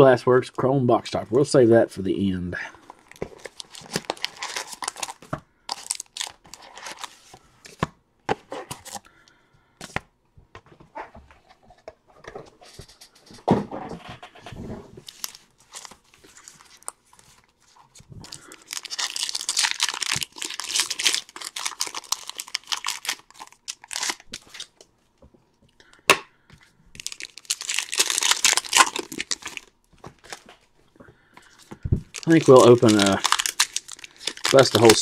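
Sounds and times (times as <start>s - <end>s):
wrappers crinkling and tearing: 2.9s - 7.4s, 15.0s - 24.8s, 26.9s - 30.6s, 31.5s - 35.0s.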